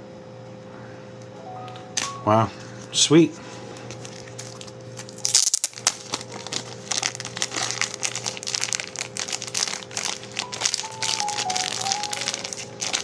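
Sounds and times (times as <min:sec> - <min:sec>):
faint background music: 0:01.3 - 0:04.6, 0:05.2 - 0:13.0
plastic packaging crinkling: 0:03.8 - 0:13.0.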